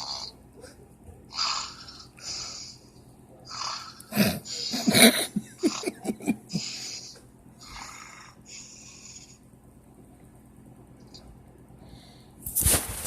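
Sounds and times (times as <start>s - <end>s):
man snoring: 3.5s - 9.4s.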